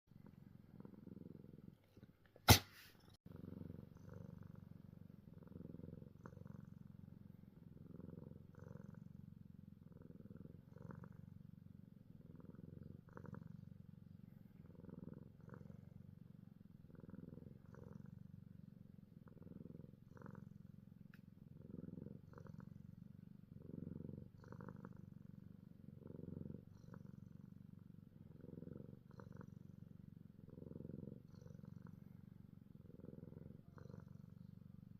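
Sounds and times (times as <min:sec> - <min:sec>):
cat purring: 0:00.1 - 0:34.9
cat sneezing: 0:02.5 - 0:03.1.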